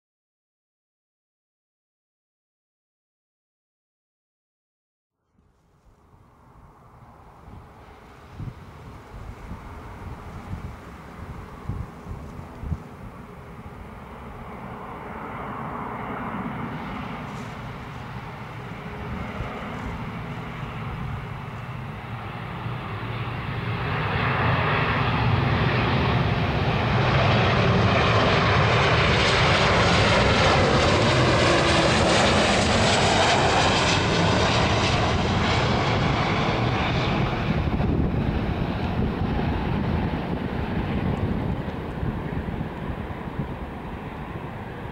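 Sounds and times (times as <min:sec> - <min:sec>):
airliner jet engines landing: 0:05.6 - 0:44.9.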